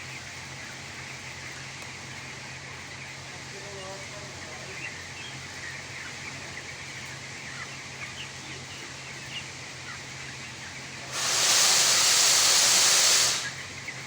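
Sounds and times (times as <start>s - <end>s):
chicks peeping: 0.0s - 14.0s
loud hiss: 11.0s - 13.8s.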